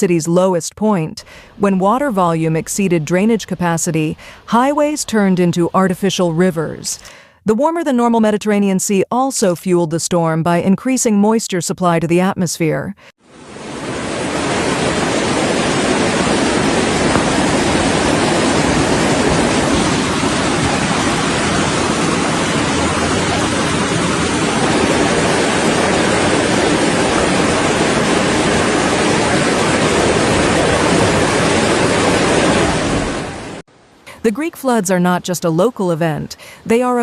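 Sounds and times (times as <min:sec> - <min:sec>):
water rushing: 0:13.2 - 0:37.0.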